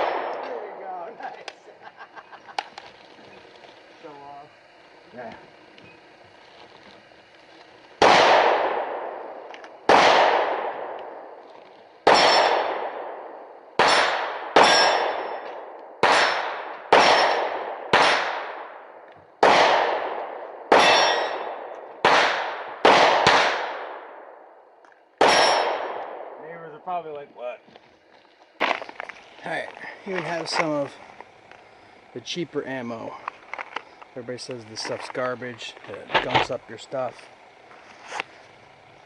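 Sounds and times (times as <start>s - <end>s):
rifle shots ringing: 0.0s - 1.1s, 8.0s - 11.4s, 12.0s - 24.4s, 25.2s - 26.4s.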